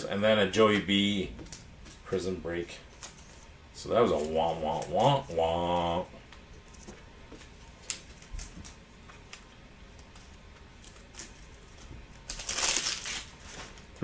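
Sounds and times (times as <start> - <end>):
foil card pack crinkling: 10.0 - 13.9.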